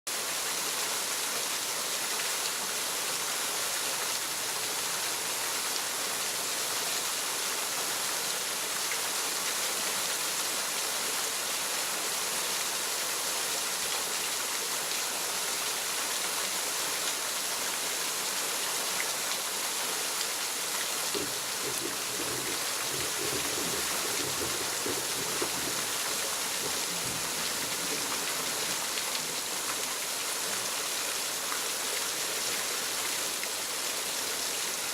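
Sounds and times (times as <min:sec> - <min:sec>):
waterfall rushing: 0:19.2 - 0:34.9.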